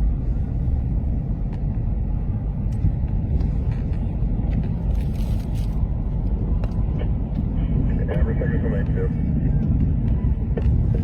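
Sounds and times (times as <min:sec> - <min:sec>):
loud low rumble: 0:00.0 - 0:11.0.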